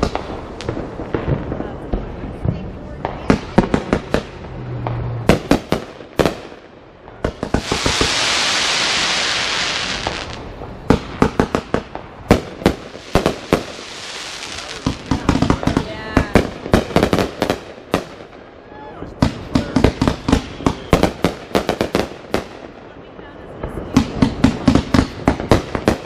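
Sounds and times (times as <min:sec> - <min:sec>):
fireworks bangs and pops: 0:00.0 - 0:26.0
loud hiss: 0:07.4 - 0:10.6, 0:12.7 - 0:15.5.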